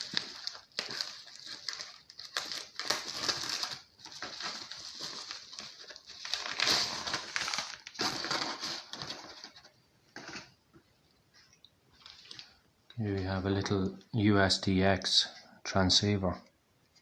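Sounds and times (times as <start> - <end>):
packaging rustling: 0.0 - 10.5.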